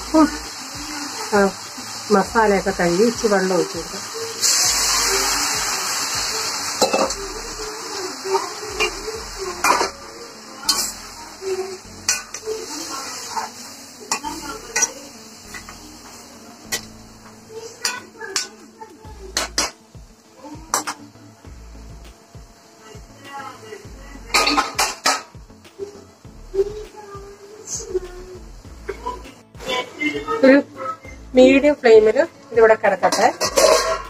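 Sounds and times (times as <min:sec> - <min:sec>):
chicken sizzling in a pan: 0:00.0 - 0:34.0
spoon scraping a pan: 0:06.5 - 0:07.2, 0:07.8 - 0:18.7, 0:24.3 - 0:25.3, 0:33.0 - 0:34.0.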